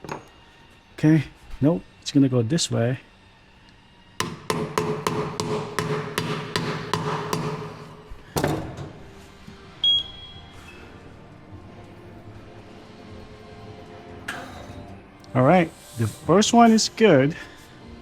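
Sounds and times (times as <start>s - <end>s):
hammer tapping metal: 4.2s - 8.2s.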